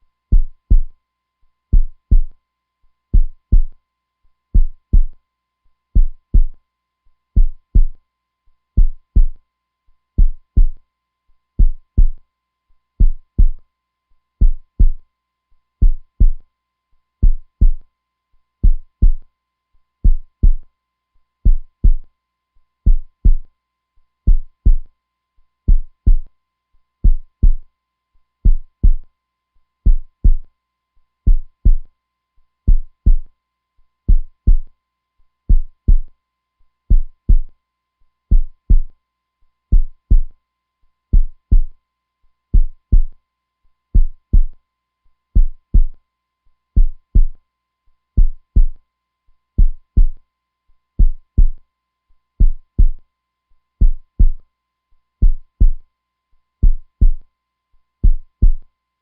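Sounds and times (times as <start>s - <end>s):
heartbeat thumps: 0.3s - 0.9s, 1.7s - 2.3s, 3.2s - 3.7s, 4.6s - 5.2s, 6.0s - 6.6s, 7.4s - 8.0s, 8.8s - 9.4s, 10.2s - 10.8s, 11.6s - 12.2s, 13.0s - 13.6s, 14.4s - 15.0s, 15.8s - 16.4s, 17.2s - 17.8s, 18.6s - 19.2s, 20.0s - 20.6s, 21.5s - 22.0s, 22.9s - 23.4s, 24.3s - 24.9s, 25.7s - 26.3s, 27.0s - 27.6s, 28.5s - 29.0s, 29.9s - 30.4s, 31.3s - 31.9s, 32.7s - 33.3s, 34.1s - 34.7s, 35.5s - 36.1s, 36.9s - 37.5s, 38.3s - 38.9s, 39.7s - 40.3s, 41.2s - 41.7s, 42.6s - 43.1s, 44.0s - 44.6s, 45.4s - 46.0s, 46.8s - 47.4s, 48.2s - 48.8s, 49.6s - 50.2s, 51.0s - 51.6s, 52.4s - 53.0s, 53.8s - 54.4s, 55.2s - 55.8s, 56.6s - 57.2s, 58.0s - 58.6s.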